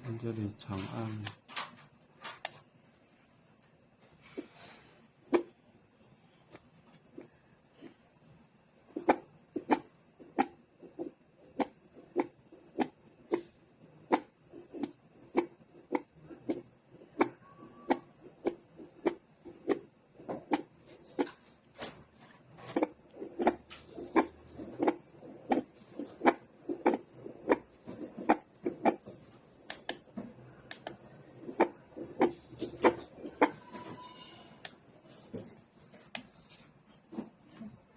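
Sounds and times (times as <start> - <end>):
fetal heartbeat whooshing thumps: 8.9 - 21.4, 22.8 - 29.0.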